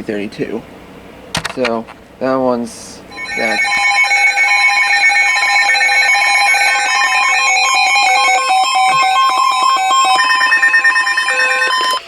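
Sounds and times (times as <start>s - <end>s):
buzzy electronic alert beeps: 3.1s - 12.0s.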